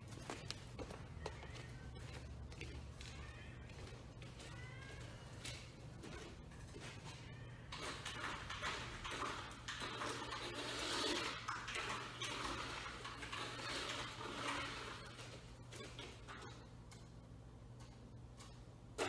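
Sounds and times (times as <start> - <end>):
toy car electric motor whirring: 7.8 - 15.4.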